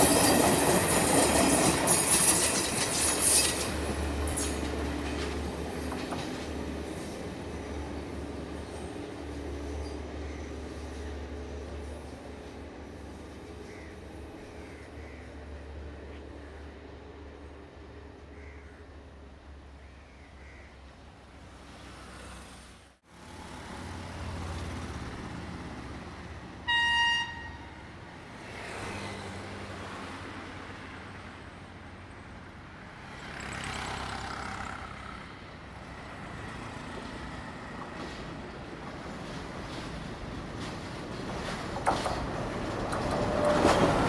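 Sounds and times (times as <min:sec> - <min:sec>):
train rumble: 0:00.0 - 0:18.3, 0:34.1 - 0:44.0
traffic: 0:00.0 - 0:44.0
train horn blast: 0:26.6 - 0:27.9.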